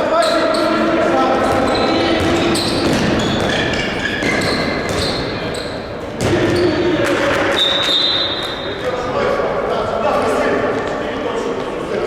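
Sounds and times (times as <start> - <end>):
shoe squeaks on floor: 0.2 - 0.8, 1.4 - 6.8, 7.5 - 8.8
ball bouncing on court: 1.4 - 7.3.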